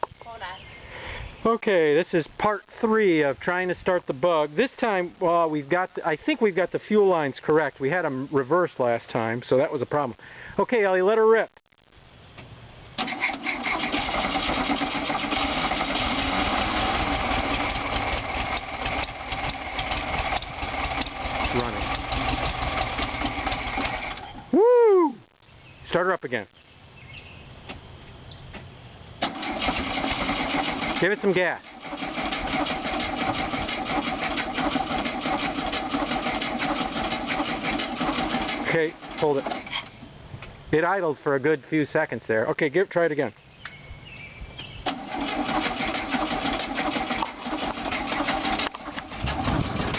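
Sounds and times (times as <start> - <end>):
starter motor cranking: 13.0 - 24.4, 29.2 - 39.9, 44.9 - 49.9
car engine idling: 13.6 - 24.3, 29.2 - 39.7
car engine running: 15.0 - 24.2.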